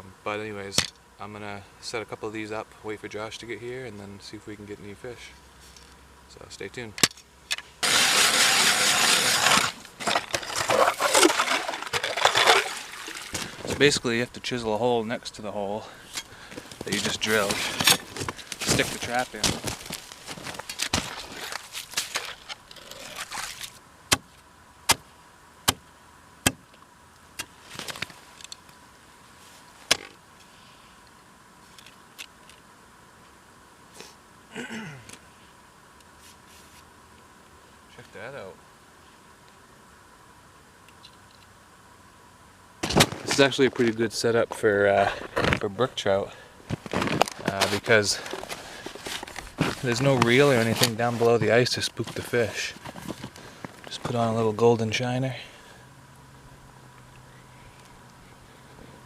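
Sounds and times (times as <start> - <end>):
ice chisel striking ice: 7.8 - 13.3
ice auger grinding ice: 7.8 - 13.8, 16.9 - 23.7.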